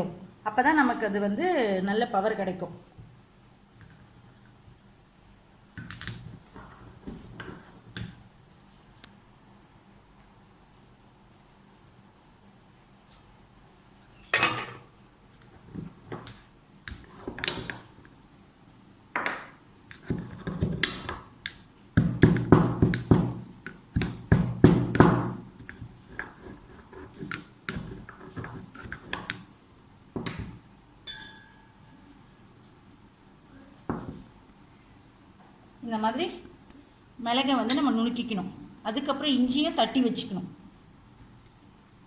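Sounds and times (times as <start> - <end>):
pestle crushing peppercorns: 19.9 - 21.3, 22.0 - 29.5.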